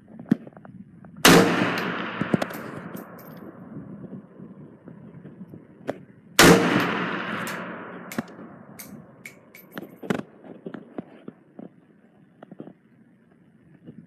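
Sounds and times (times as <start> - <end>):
gunshot with echo: 1.2 - 3.6, 6.4 - 9.0
sharp clicks and knocks: 1.6 - 3.5, 6.7 - 10.8.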